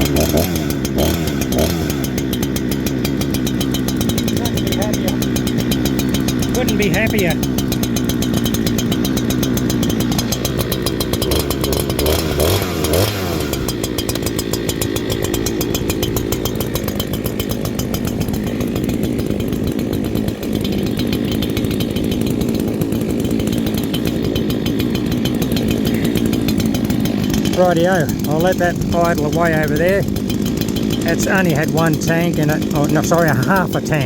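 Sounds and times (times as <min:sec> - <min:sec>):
chainsaw idling: 0:00.0 - 0:34.0.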